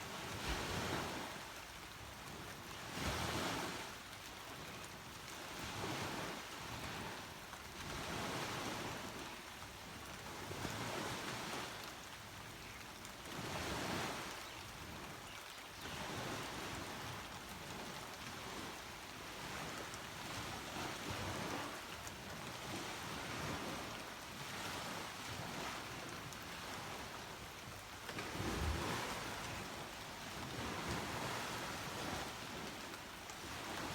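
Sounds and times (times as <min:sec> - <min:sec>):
sea waves breaking on beach: 0:00.0 - 0:04.0, 0:15.8 - 0:33.9.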